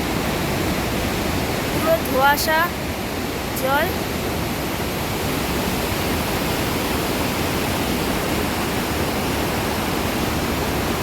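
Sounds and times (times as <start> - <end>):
river rushing over rocks: 0.0 - 11.0.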